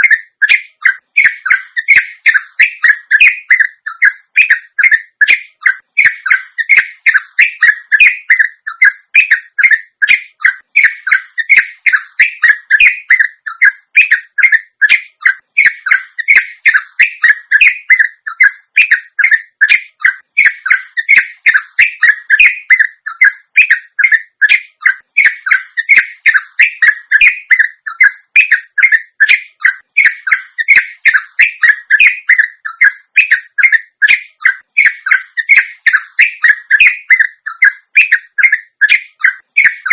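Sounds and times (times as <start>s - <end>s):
bird chattering song: 0.0s - 39.9s.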